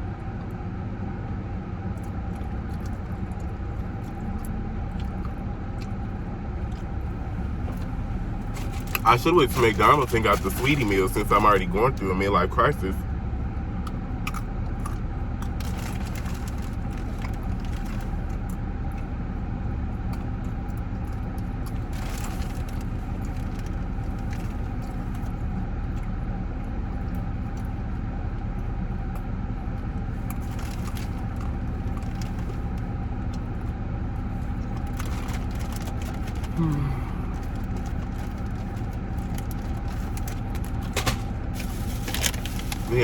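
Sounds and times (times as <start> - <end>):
car engine idling: 0.2 - 43.0
handling noises: 6.6 - 12.5, 34.4 - 43.0.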